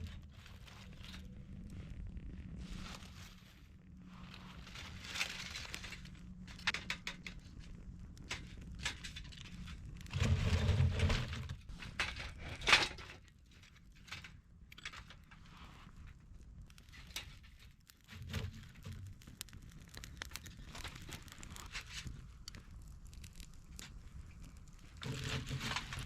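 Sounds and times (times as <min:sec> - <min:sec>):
dull low rumble: 0:00.0 - 0:11.8
dry twigs snapping and rustling: 0:04.3 - 0:10.2, 0:16.1 - 0:26.0.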